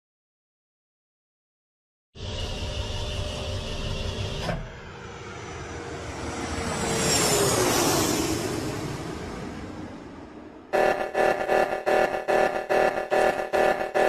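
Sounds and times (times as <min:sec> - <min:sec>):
steady engine hum: 0:02.2 - 0:14.0
vehicle passing by at speed: 0:04.9 - 0:10.6.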